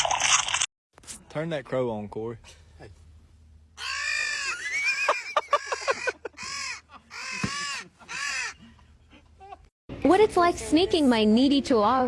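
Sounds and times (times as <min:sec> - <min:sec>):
crow cawing: 0:03.8 - 0:08.6.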